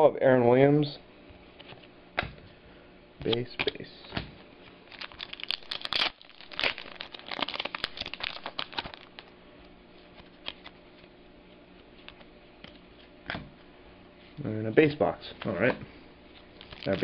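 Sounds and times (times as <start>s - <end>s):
wrapper crinkling and rustling: 4.9s - 9.4s, 10.0s - 10.8s, 16.4s - 17.0s.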